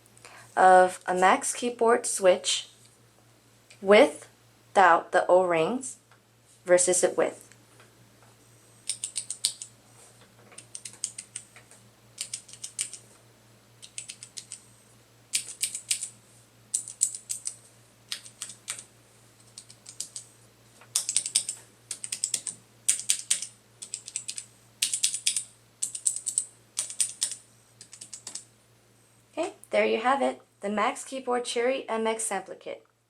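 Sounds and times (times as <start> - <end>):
mechanical keyboard keys clicking: 8.9 - 9.7, 10.6 - 11.5, 12.2 - 13.0, 13.8 - 14.6, 15.4 - 16.1, 16.8 - 18.8, 19.4 - 20.2, 20.9 - 28.4.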